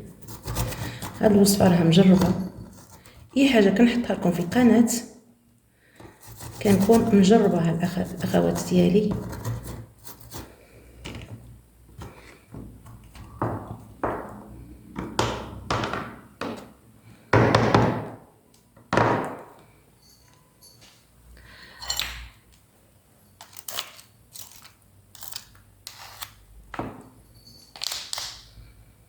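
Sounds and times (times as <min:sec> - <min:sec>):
garlic scraping on hand grater: 0:00.2 - 0:03.1, 0:06.1 - 0:10.6.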